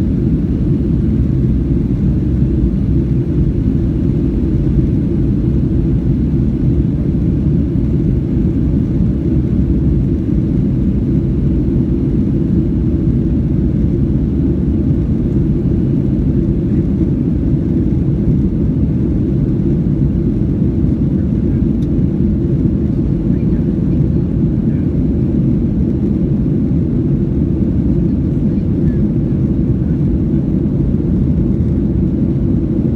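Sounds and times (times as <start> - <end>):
airliner cabin engine rumble: 0.0 - 32.9.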